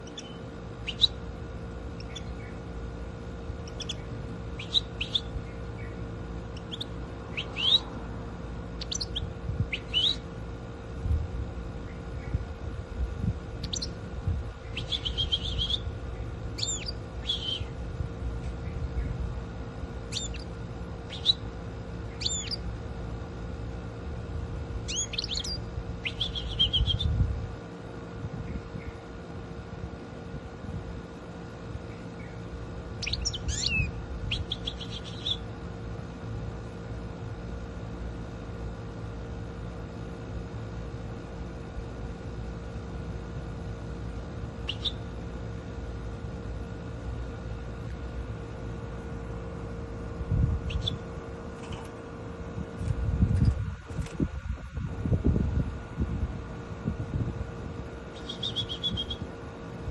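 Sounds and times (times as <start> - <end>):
goldfinch chirps: 0.0 - 1.2, 2.0 - 2.6, 3.6 - 7.9, 8.8 - 10.2, 13.6 - 14.0, 14.7 - 15.9, 16.5 - 17.7, 20.1 - 21.4, 22.1 - 22.7, 24.9 - 27.1, 33.0 - 35.4, 44.6 - 45.0, 50.7 - 51.0, 58.1 - 59.2
low steady rumble: 0.0 - 59.9.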